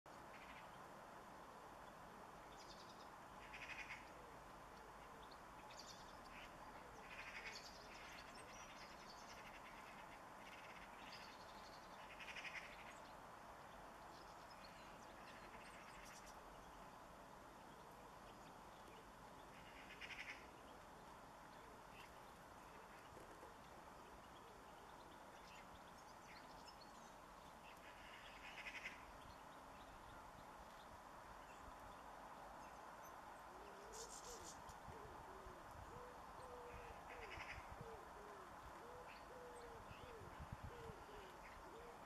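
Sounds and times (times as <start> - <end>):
low outdoor hiss: 0.1 - 42.0
small birds chirping: 4.9 - 34.9.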